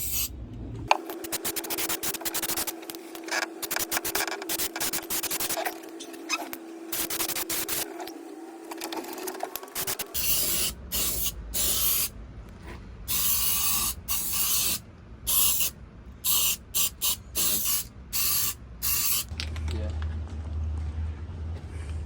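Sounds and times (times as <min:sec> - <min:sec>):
aerosol can spraying: 0:00.0 - 0:00.3, 0:01.1 - 0:02.8, 0:03.6 - 0:05.8, 0:06.9 - 0:07.9, 0:09.8 - 0:12.1, 0:13.1 - 0:19.3.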